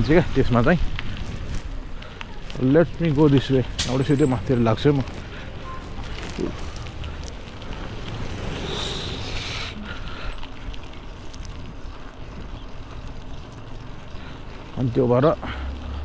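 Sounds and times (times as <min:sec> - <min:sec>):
wind buffeting microphone: 0:00.0 - 0:13.7
motorcycle engine rumble: 0:00.0 - 0:16.0
hiss: 0:07.9 - 0:10.1.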